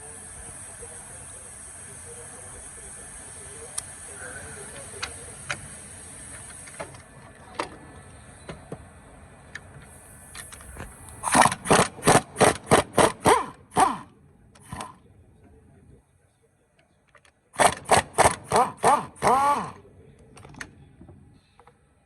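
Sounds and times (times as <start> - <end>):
power wrench bursts: 9.9 - 15.0, 17.6 - 19.8.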